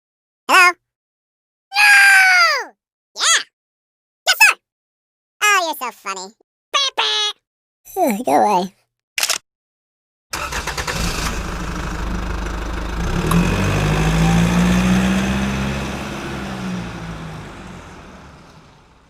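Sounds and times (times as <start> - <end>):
rapid clicking start: 10.3 - 13.5
car engine running: 10.4 - 19.0.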